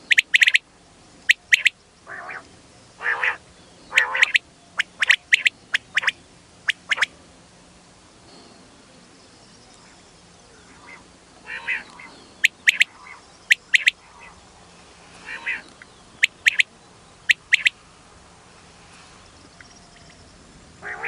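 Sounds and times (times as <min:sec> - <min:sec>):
quail calling: 0:00.0 - 0:00.6, 0:01.3 - 0:02.4, 0:03.0 - 0:07.1, 0:10.7 - 0:14.4, 0:15.2 - 0:16.7, 0:17.3 - 0:17.8.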